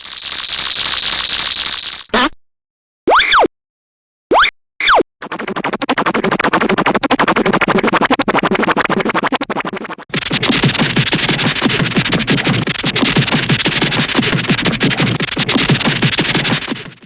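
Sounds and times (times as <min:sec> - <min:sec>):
fast clatter of clicks: 0:00.0 - 0:02.1, 0:06.4 - 0:17.0.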